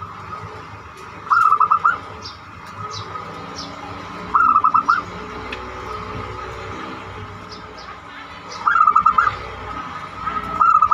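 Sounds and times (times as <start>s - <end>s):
small birds chirping: 0.0s - 10.9s
dove cooing: 1.3s - 2.2s, 4.3s - 5.2s.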